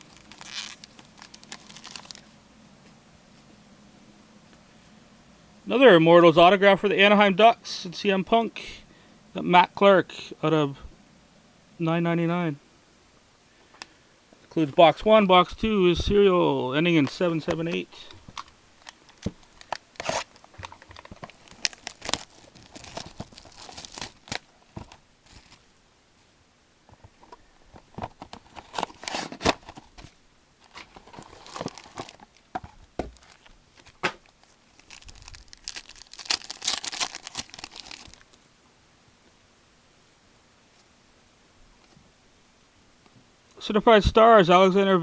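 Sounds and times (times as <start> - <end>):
packaging crinkling and tearing: 0.0 - 2.3, 17.1 - 25.6, 27.8 - 38.4.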